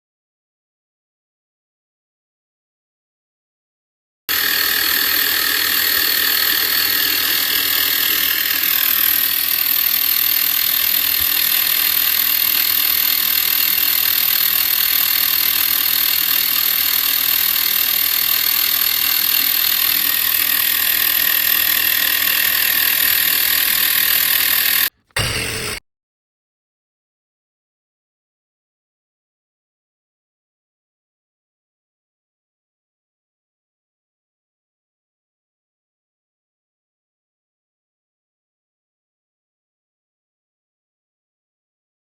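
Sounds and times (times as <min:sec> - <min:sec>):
air compressor buzzing: 0:04.3 - 0:25.8.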